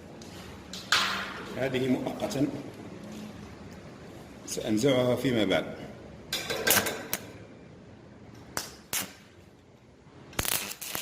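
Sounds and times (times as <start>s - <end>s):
sharp crackling bursts: 8.6s - 9.5s, 10.1s - 11.0s.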